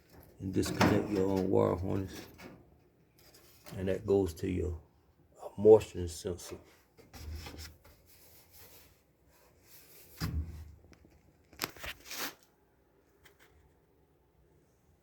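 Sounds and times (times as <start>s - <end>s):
sharp scraping rustles: 11.6s - 12.5s.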